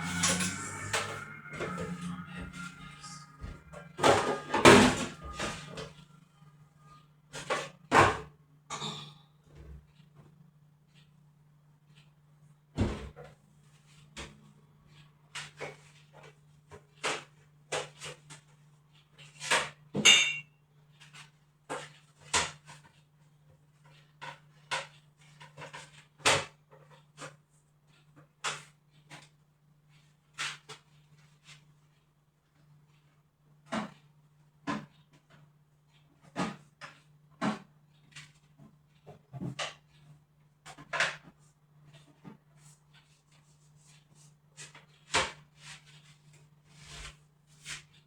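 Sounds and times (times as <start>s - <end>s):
faint low hum: 0.0s - 7.7s.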